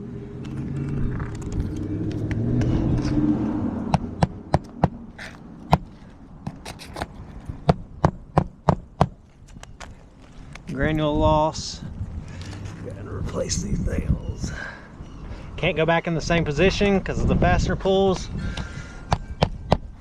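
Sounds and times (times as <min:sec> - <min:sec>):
low engine hum: 0:00.0 - 0:08.0.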